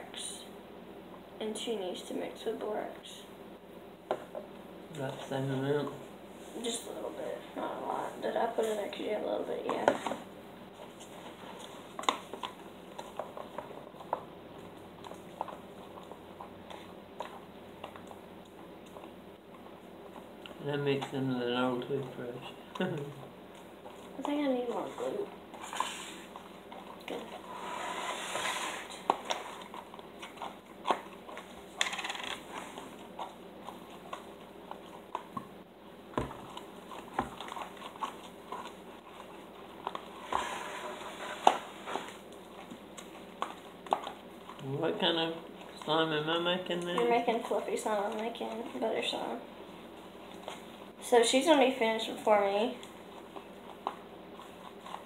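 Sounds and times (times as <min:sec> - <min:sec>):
scraping in a bowl: 0:24.6 - 0:26.4, 0:27.1 - 0:29.7, 0:40.0 - 0:42.2.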